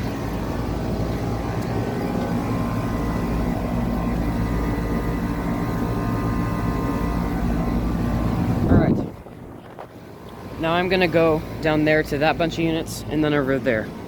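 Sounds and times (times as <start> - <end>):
compressor humming: 0.0 - 14.0
condenser fan blowing: 0.0 - 14.0.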